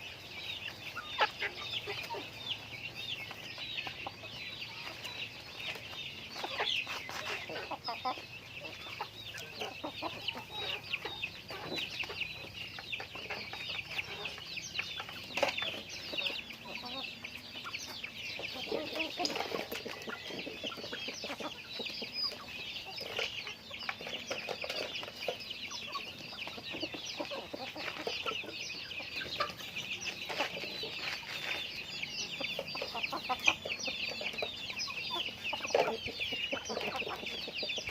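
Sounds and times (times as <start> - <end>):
chickens calling: 0.0 - 37.9
chickens clucking: 0.0 - 37.9.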